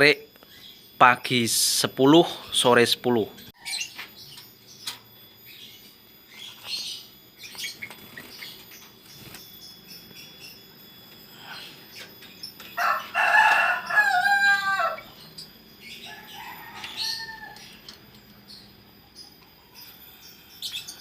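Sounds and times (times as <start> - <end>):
high bird chirps: 3.4 - 21.0
loud bird call: 12.8 - 15.4.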